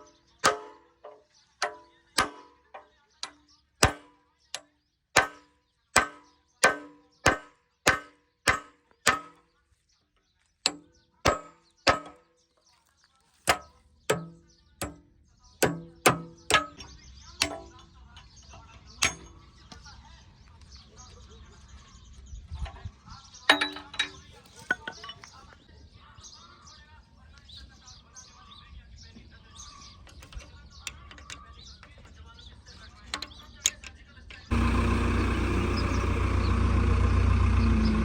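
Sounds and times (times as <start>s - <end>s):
low machine hum: 34.5s - 38.0s.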